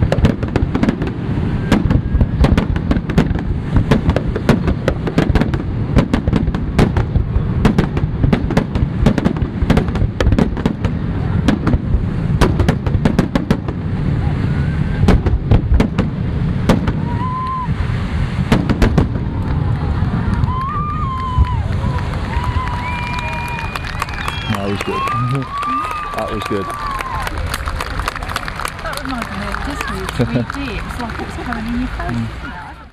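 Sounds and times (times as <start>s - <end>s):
low rumble: 0.0s - 24.6s
fireworks bangs and crackle: 0.0s - 32.9s.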